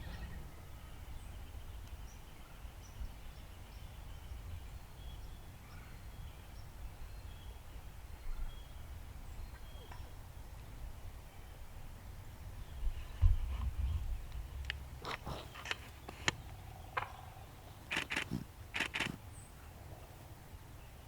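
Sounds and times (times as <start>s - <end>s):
low rumble on microphone: 0.0s - 5.4s, 10.7s - 17.8s
songbird chirps: 0.0s - 21.0s.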